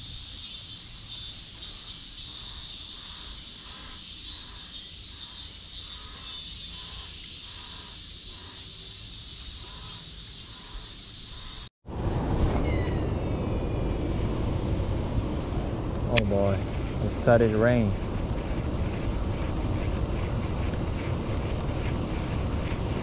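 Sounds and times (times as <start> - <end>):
insect chorus buzzing: 0.0 - 11.7
wind and rain on microphone: 11.9 - 23.0.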